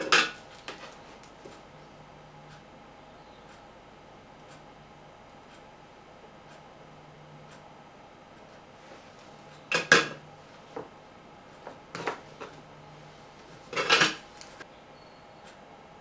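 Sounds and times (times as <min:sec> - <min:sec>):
tools knocking and clattering: 0:00.0 - 0:01.0, 0:09.7 - 0:10.2, 0:11.6 - 0:12.6, 0:13.6 - 0:14.6
parts rattling: 0:09.7 - 0:10.2, 0:11.7 - 0:12.6, 0:13.5 - 0:14.6.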